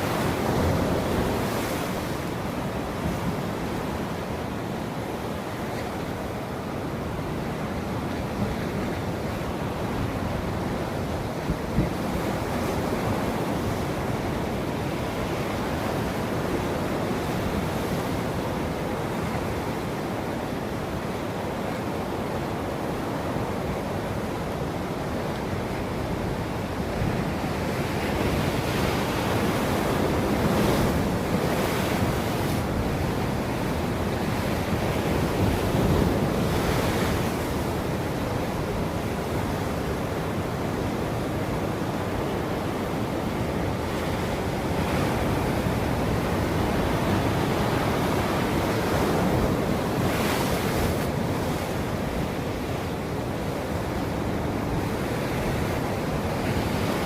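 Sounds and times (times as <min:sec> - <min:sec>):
wind noise on microphone: 0:06.6 - 0:57.0
waves breaking: 0:24.9 - 0:57.0.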